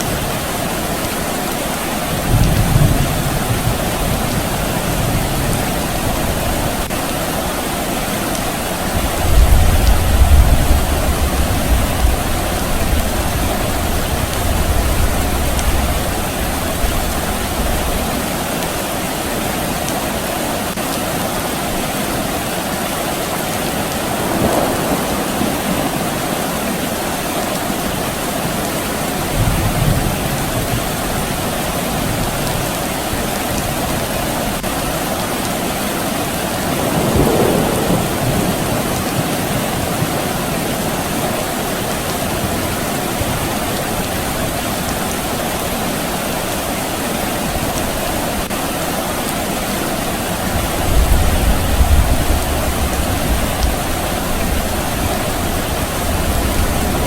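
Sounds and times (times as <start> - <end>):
steady rain falling: 0.0 - 57.0
distant thunder rumbling: 8.9 - 18.3, 23.8 - 28.0, 36.5 - 44.4, 50.5 - 57.0.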